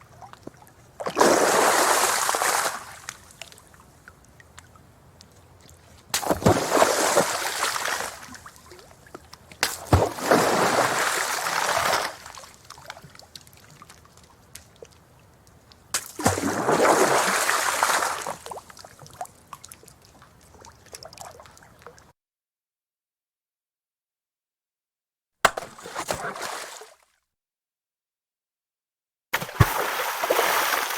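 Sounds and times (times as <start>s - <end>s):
rocks plunking into water: 6.1s - 8.3s, 9.1s - 11.2s, 15.9s - 18.6s, 25.5s - 27.0s, 29.4s - 30.9s
faint water sloshing: 25.5s - 27.0s
water splashing: 25.5s - 27.0s, 29.4s - 30.9s.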